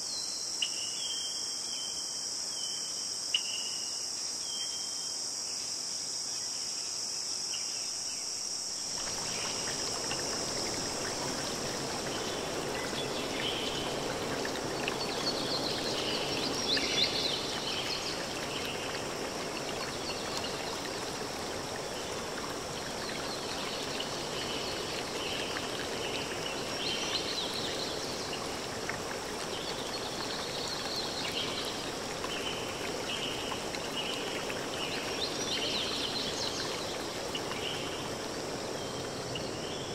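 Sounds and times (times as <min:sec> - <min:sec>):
insect trilling: 0:08.4 - 0:22.0
flowing water rushing: 0:08.5 - 0:39.9.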